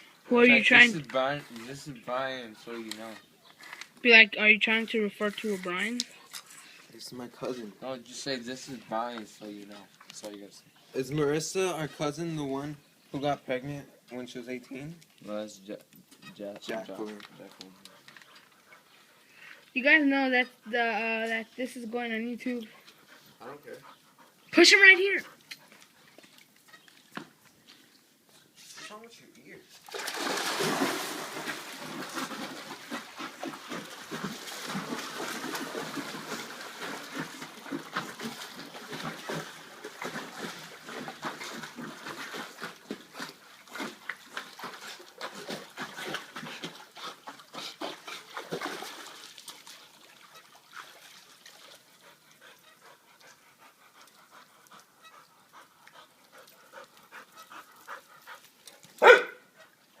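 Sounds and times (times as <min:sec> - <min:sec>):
dog panting: 0:17.6 - 0:19.6, 0:22.5 - 0:26.2, 0:51.6 - 0:59.7
water splashing: 0:28.8 - 1:00.0.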